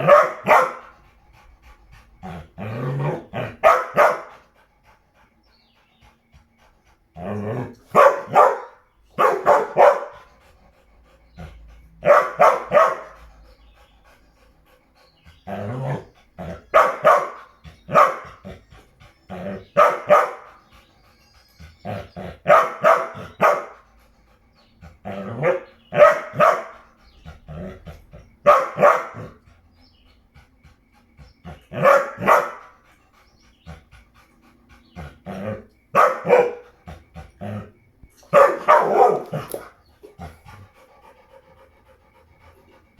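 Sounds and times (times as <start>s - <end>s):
dog barking: 0.0s - 0.9s, 3.0s - 4.3s, 7.9s - 10.3s, 12.0s - 13.2s, 15.6s - 18.4s, 19.4s - 20.5s, 22.4s - 23.8s, 25.1s - 26.8s, 28.4s - 29.4s, 31.7s - 32.6s, 35.9s - 36.6s, 38.3s - 39.7s.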